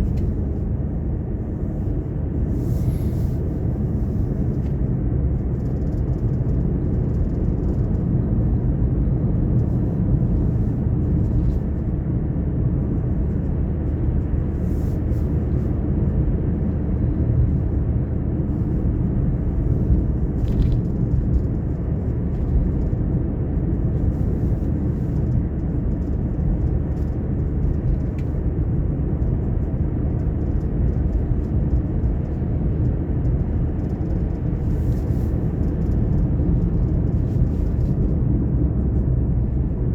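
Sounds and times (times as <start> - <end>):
car engine and tyre noise: 0.0 - 39.9.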